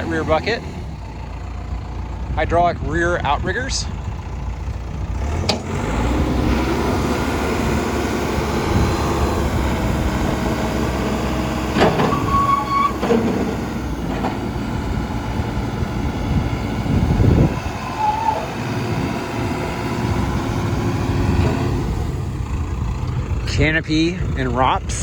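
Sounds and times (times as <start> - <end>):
backhoe loader running: 0.0 - 25.0
metal knocks: 11.6 - 14.6
short high squeak: 11.8 - 13.2, 17.9 - 18.5.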